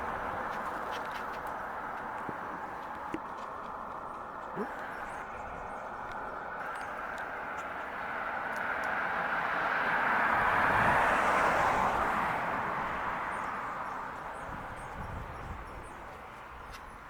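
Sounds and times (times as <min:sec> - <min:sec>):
vehicle passing by: 0:05.6 - 0:15.9.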